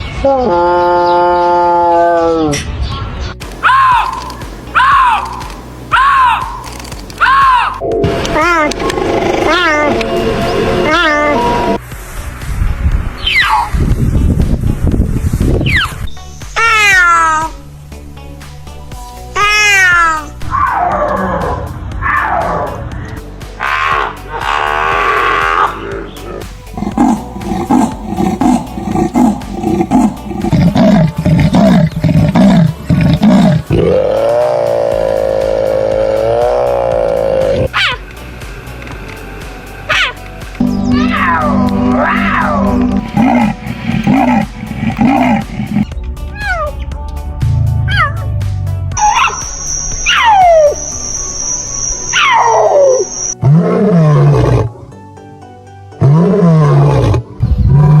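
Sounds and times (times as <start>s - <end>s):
big cat calling: 8.4s - 10.1s, 23.6s - 38.0s, 39.9s - 46.9s, 47.8s - 48.3s, 56.0s - 58.0s.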